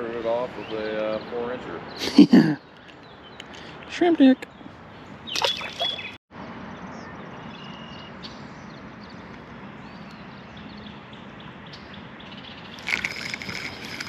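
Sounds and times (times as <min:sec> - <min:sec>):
faint high chirps: 0:05.3 - 0:06.2.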